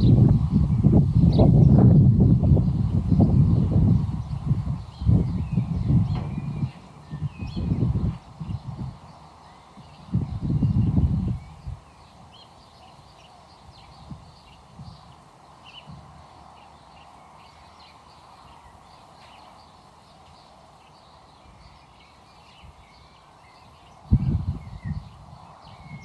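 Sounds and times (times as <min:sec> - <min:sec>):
birds chirping: 0:00.0 - 0:26.0
soft low thumps: 0:05.0 - 0:08.9.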